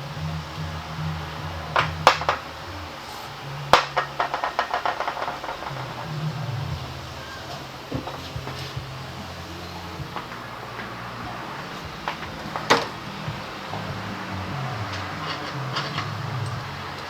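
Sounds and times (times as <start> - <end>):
low hum: 0.0 - 17.0
ratchet ticking: 0.0 - 17.0.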